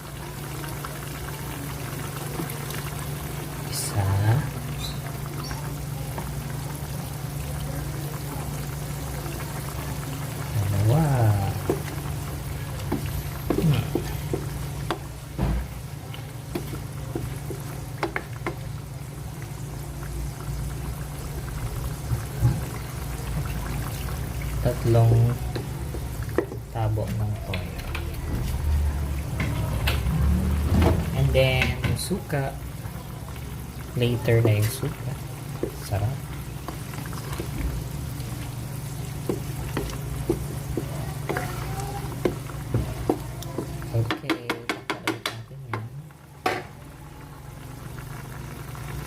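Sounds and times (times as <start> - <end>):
food simmering: 0.0 - 49.0
spoon knocking against pot: 42.2 - 46.7.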